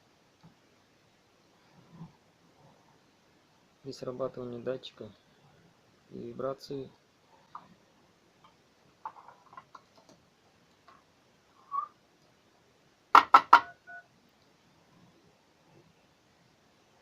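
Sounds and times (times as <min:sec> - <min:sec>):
phone beeps: 0:13.3 - 0:14.1.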